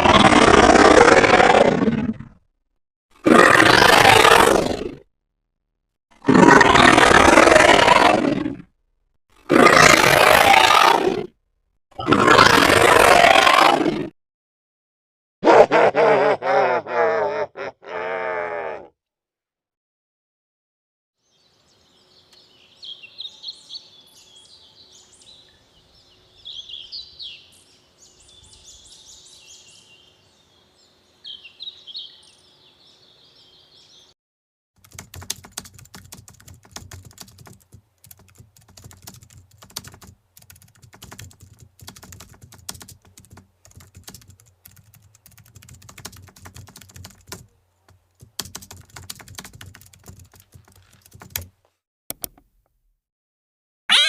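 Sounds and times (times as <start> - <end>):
rapid irregular clicks: 34.8 - 51.5.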